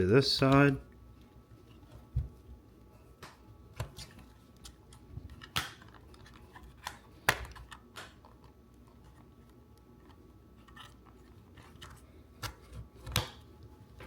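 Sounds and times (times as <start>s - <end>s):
sharp plastic snaps: 3.2s - 8.4s.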